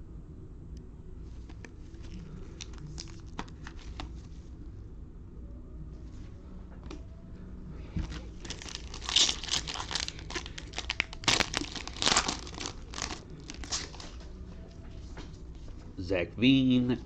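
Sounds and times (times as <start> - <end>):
card pack wrapper tearing and crinkling: 2.0 - 4.1, 8.0 - 14.2.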